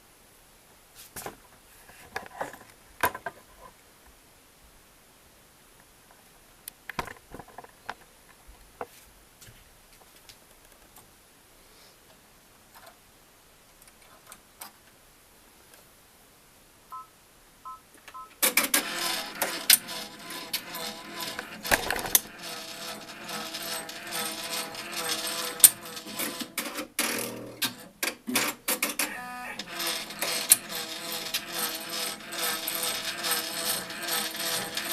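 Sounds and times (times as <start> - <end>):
short beeps: 16.9 - 18.4
embroidery machine stitching clatter: 18.4 - 34.9.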